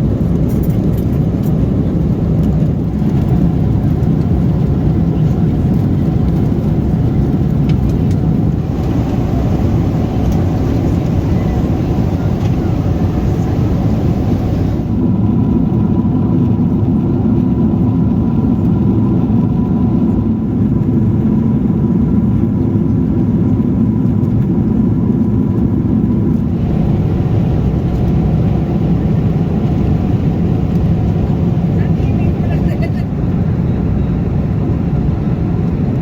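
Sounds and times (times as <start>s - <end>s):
airplane cabin rumble: 0.0s - 36.0s
faint steady whine: 8.0s - 15.3s.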